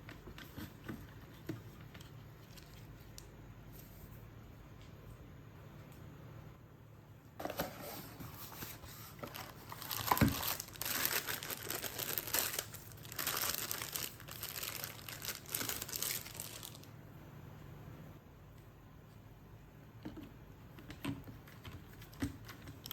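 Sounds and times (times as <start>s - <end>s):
crinkling and rustling: 0.0s - 4.1s, 7.4s - 16.9s, 20.0s - 22.9s.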